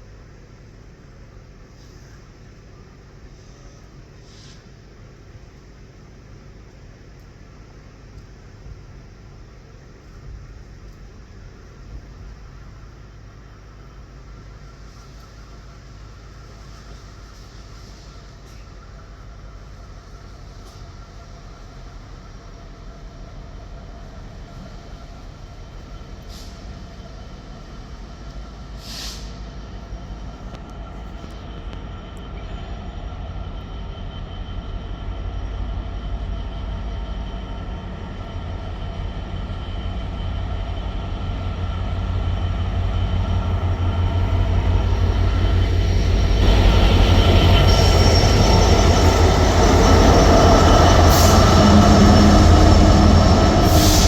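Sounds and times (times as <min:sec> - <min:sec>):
train rumbling: 0:00.0 - 0:54.0
high wheel squeaks: 0:45.0 - 0:54.0.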